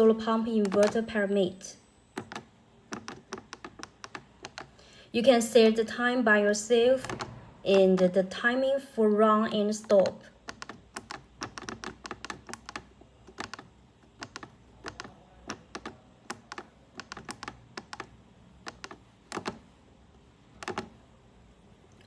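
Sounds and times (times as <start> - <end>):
keypad button clicks: 0.6 - 1.1, 2.2 - 4.7, 9.9 - 19.6, 20.6 - 20.9.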